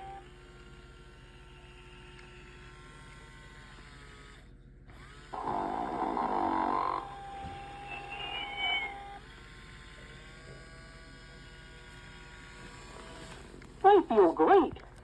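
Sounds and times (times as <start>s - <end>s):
faint steady hum: 5.0s - 9.4s
electronic toy snoring: 5.0s - 13.2s.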